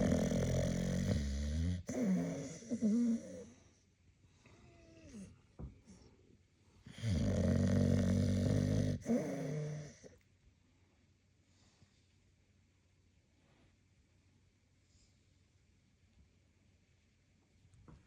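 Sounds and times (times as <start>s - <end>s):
dog snoring: 0.0s - 3.6s, 6.9s - 10.2s.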